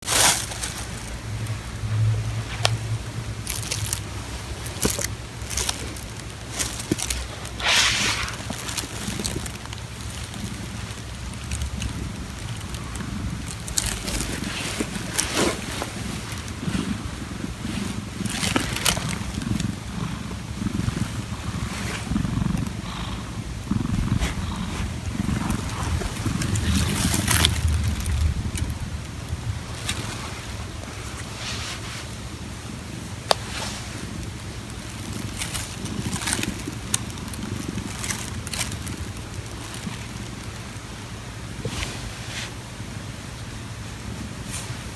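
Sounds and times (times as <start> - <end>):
cat purring: 0.1 - 43.2
burst of noise: 7.5 - 9.0
short sharp noise: 7.6 - 8.5.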